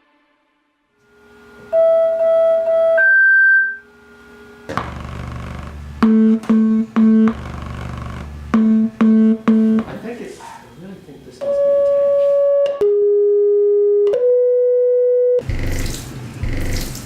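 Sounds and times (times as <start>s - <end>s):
long synthesizer tones: 1.0s - 9.9s, 11.4s - 16.9s
low synthesizer drone: 1.0s - 9.9s, 15.2s - 17.0s
short loud synthesizer tones: 4.7s - 9.9s.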